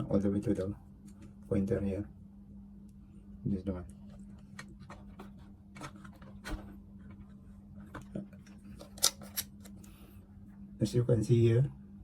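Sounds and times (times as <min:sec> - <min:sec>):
faint steady hum: 0:00.0 - 0:12.0
multimeter leads clicking and rubbing: 0:07.9 - 0:09.9.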